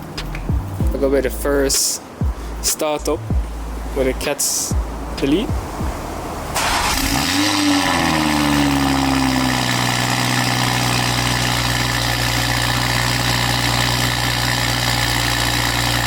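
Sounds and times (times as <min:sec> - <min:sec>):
car engine revving down to idle: 0:03.2 - 0:16.0.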